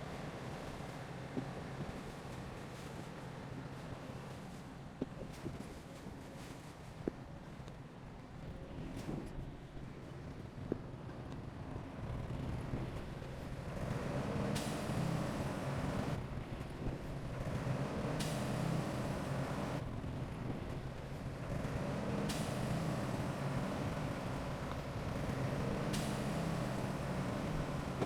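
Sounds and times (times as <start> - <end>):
diesel engine running: 17.4 - 28.0.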